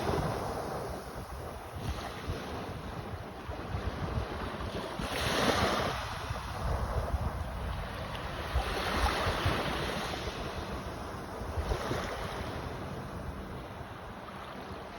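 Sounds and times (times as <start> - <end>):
waves breaking: 0.0 - 14.9
wind buffeting microphone: 0.0 - 14.9.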